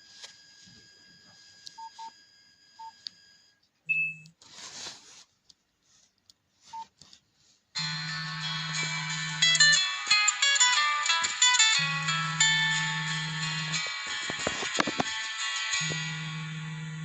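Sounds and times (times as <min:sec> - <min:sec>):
keypad beeps: 0:03.9 - 0:04.3
phone ringtone melody: 0:07.8 - 0:17.0.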